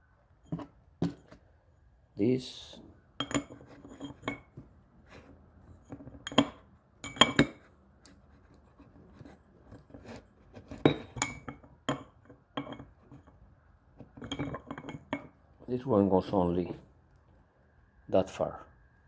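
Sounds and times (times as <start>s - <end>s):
metal wrenches clinking: 14.2s - 15.2s.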